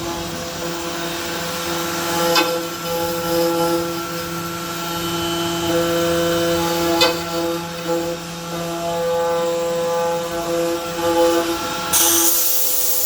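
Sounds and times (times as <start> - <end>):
motors whining: 11.9 - 13.0.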